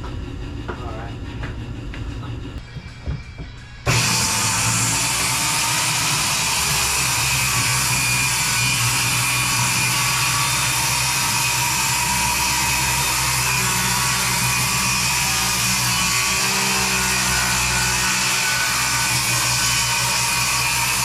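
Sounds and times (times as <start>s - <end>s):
power tool running: 2.5s - 21.0s.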